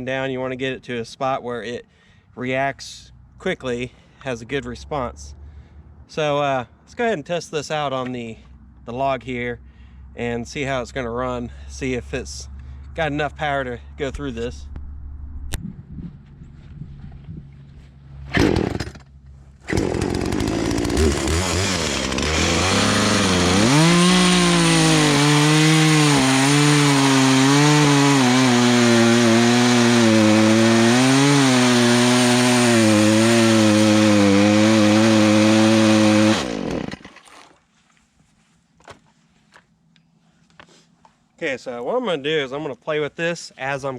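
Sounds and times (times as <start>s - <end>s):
chainsaw cutting through a log: 18.3s - 37.4s
chainsaw idling and revving: 18.4s - 19.1s, 19.7s - 37.2s.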